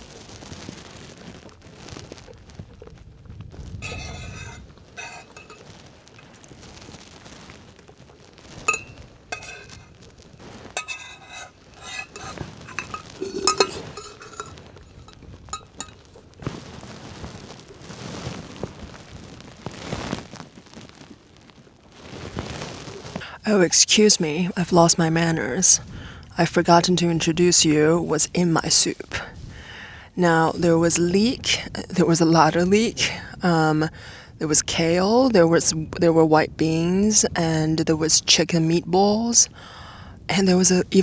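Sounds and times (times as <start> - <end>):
spoon clinking against container: 3.8 - 5.7, 8.6 - 16.2.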